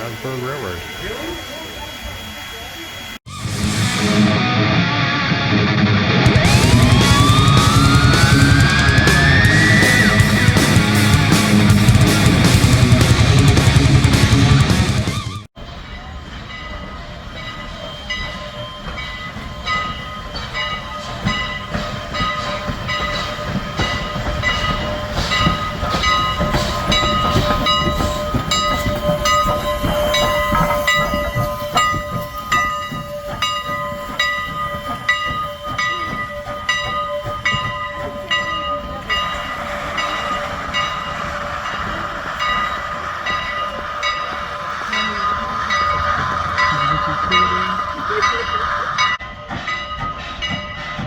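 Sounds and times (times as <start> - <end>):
steam hiss: 0.0 - 4.4, 15.0 - 51.0
high-pitched whining tones: 6.2 - 13.9, 16.8 - 49.8
train wheels clacking on rails: 6.3 - 51.0.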